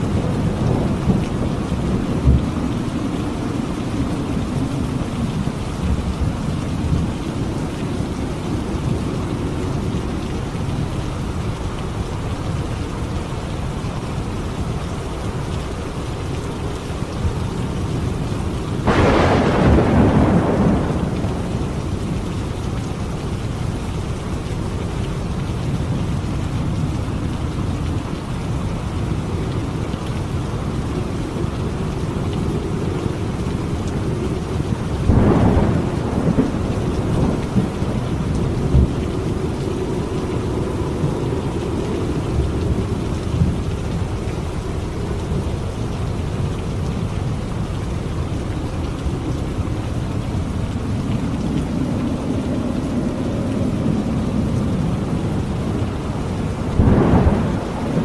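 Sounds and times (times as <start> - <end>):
thunder clap and rumble: 0.0 - 11.0, 17.0 - 23.0, 30.7 - 47.7, 48.8 - 58.0
steady rain: 0.0 - 58.0.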